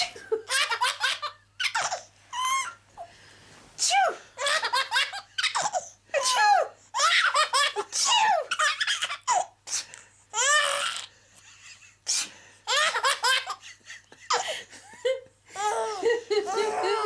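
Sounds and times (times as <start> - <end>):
baby laughing: 0.4 - 2.8, 4.4 - 9.6, 12.7 - 13.7, 15.6 - 17.0.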